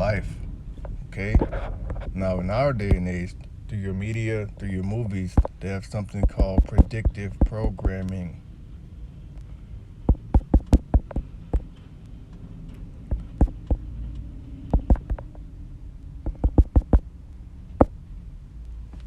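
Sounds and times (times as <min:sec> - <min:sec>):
low steady hum: 0:00.0 - 0:19.0
keyboard typing clicks: 0:10.1 - 0:11.7, 0:14.8 - 0:15.2, 0:16.3 - 0:17.0.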